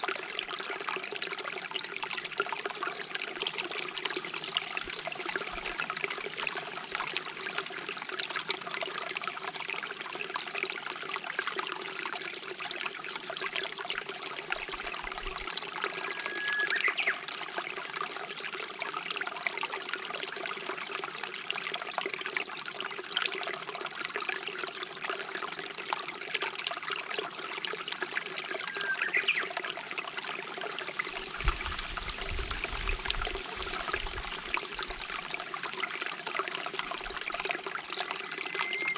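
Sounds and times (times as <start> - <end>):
stream trickling and babbling: 0.0 - 38.9
bird whistling call: 15.9 - 17.2, 28.6 - 29.5, 38.4 - 38.9.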